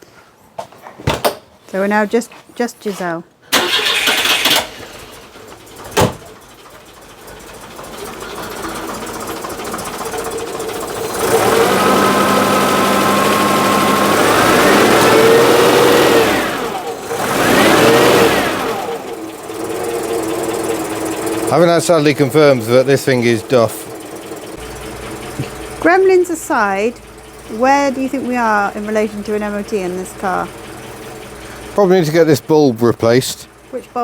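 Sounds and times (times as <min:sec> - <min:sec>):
car engine revving: 0:03.6 - 0:34.0
rough grinding noise: 0:07.8 - 0:33.4.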